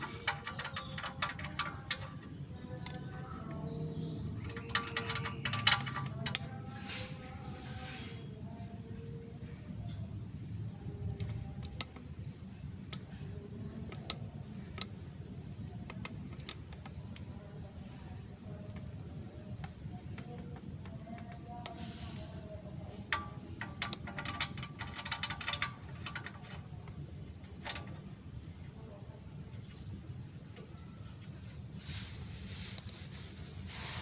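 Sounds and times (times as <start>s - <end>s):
metal hand tools clinking: 0.0s - 2.3s, 4.4s - 6.6s, 23.1s - 26.9s.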